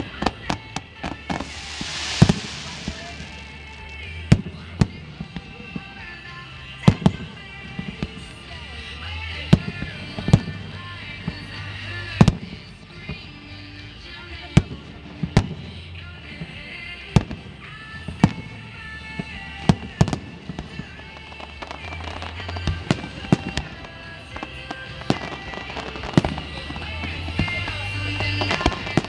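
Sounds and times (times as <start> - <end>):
music playing: 1.0 - 5.8
fireworks bangs: 1.3 - 4.7.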